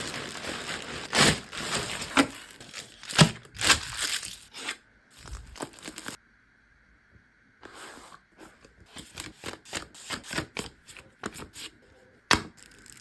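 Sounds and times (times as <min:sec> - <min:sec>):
packaging crinkling and tearing: 0:00.0 - 0:06.2.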